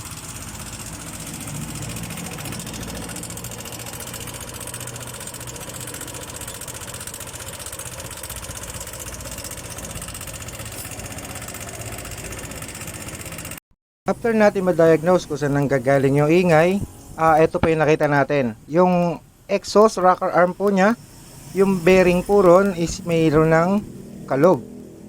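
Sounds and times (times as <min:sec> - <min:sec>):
knocking tick inside engine: 0:00.0 - 0:13.6
scooter engine idling: 0:00.0 - 0:17.1, 0:20.8 - 0:24.2.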